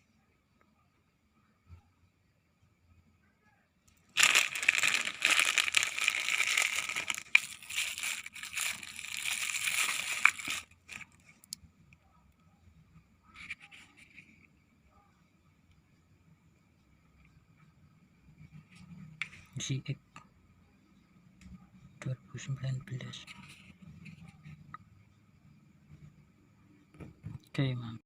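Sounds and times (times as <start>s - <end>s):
plastic packaging crinkling: 4.1s - 11.3s.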